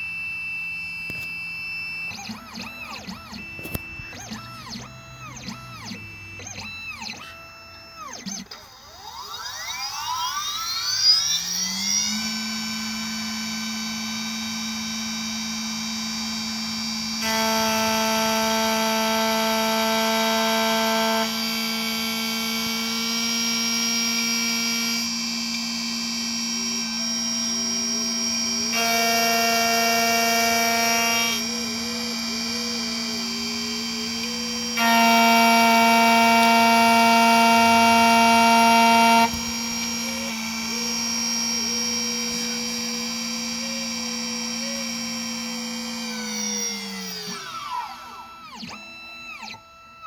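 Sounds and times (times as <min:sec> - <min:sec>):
higher machine tones: 0:00.0 - 0:10.6, 0:22.7 - 0:49.6
key-cutting machine motor whine: 0:00.0 - 0:50.0.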